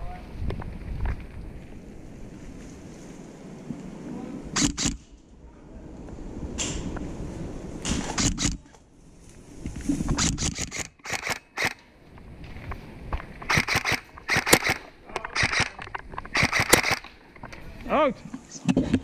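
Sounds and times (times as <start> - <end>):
airsoft rifles firing bursts: 10.2 - 11.8, 13.5 - 17.1.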